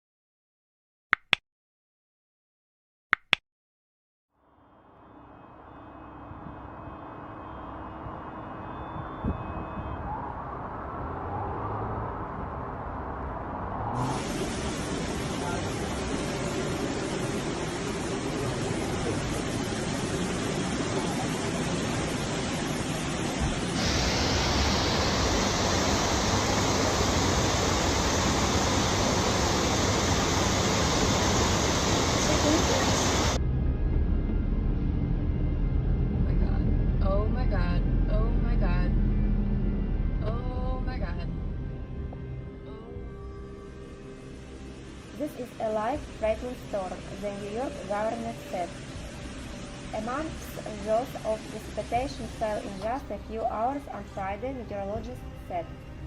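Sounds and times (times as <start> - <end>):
low hum: 4.4 - 56.0
vehicle and street noise: 4.7 - 56.0
heavy rain and floodwater rushing: 14.0 - 33.4, 44.9 - 53.6.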